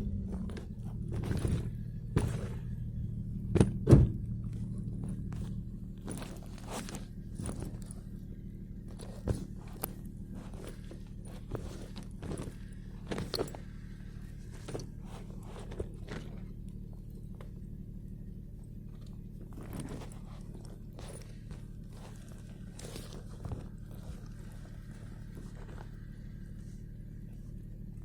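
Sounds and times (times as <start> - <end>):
steady low hum: 0.0 - 28.0
knocks and thuds: 0.2 - 8.0, 8.9 - 13.8
footsteps: 0.4 - 3.0, 3.6 - 8.2, 8.9 - 16.5.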